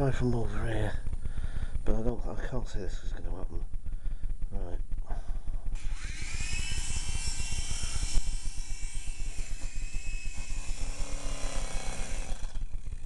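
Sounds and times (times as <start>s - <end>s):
toy helicopter motor whine: 5.8s - 13.0s.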